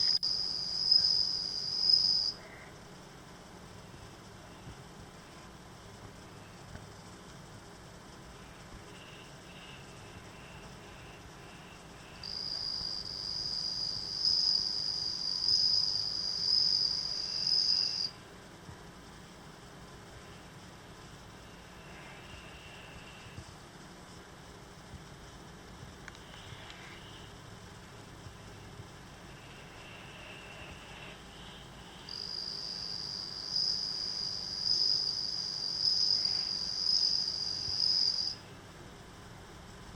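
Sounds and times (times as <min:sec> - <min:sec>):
cricket high ringing song: 0:00.0 - 0:02.4, 0:07.9 - 0:18.2, 0:29.0 - 0:38.4.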